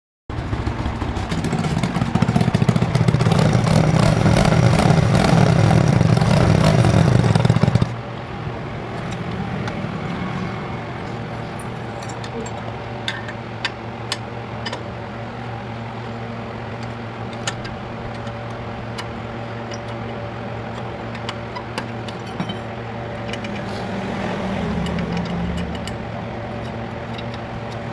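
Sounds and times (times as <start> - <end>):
motorcycle engine running: 0.3 - 13.1, 22.8 - 27.9.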